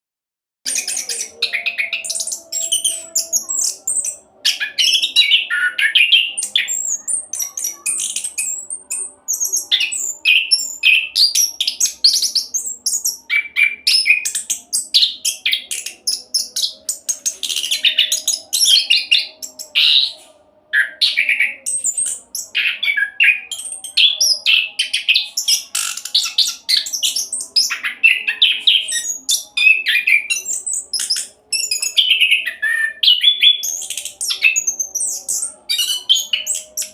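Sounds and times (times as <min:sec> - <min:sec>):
thrush singing rapid chirps and trills: 0:00.7 - 0:20.2, 0:20.8 - 0:36.9.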